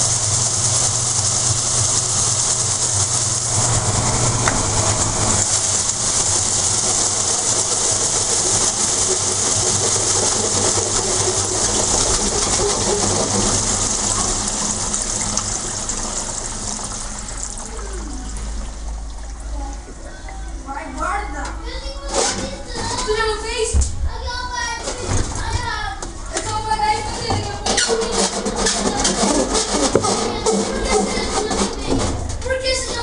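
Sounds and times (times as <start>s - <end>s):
rushing water: 0.0s - 20.6s
washing machine spinning: 0.0s - 33.0s
washing machine drum creaking: 26.4s - 33.0s.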